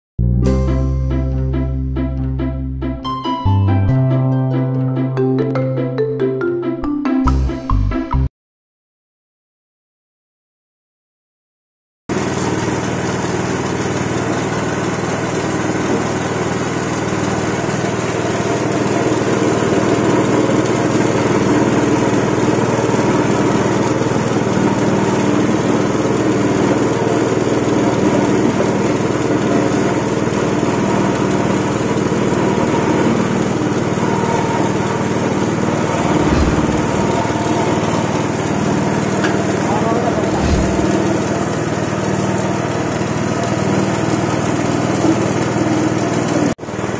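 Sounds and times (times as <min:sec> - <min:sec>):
pressing machine motor humming: 0:12.1 - 0:45.7.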